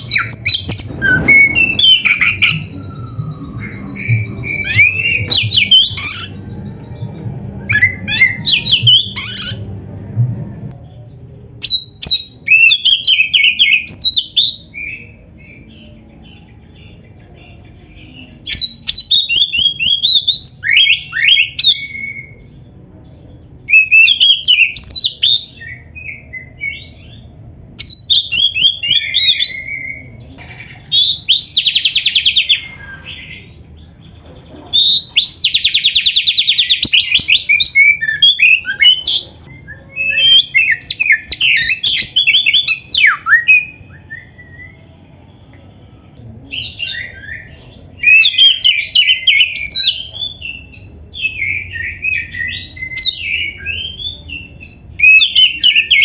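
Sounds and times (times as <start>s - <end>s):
magpie-robin singing: 0.0s - 9.6s, 10.9s - 45.2s, 46.1s - 56.0s
rapid buzzy repeated bird notes: 0.0s - 10.0s.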